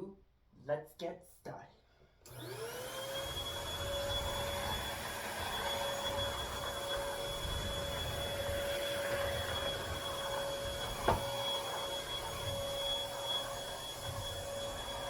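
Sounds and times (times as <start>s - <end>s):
stick vacuum running: 2.3s - 15.0s
knock: 11.0s - 11.4s.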